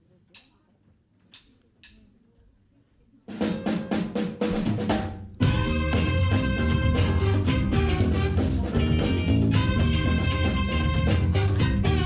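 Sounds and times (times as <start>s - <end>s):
pitched band tones: 3.3s - 12.0s.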